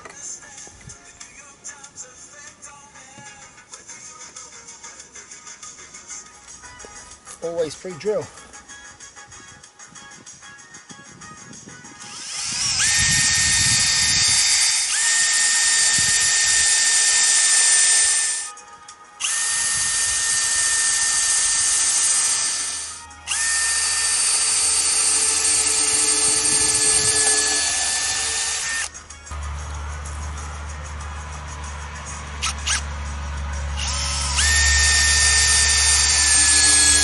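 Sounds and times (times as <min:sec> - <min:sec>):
power drill drilling into wood: 0:12.0 - 0:18.5, 0:19.2 - 0:28.9, 0:33.8 - 0:37.0.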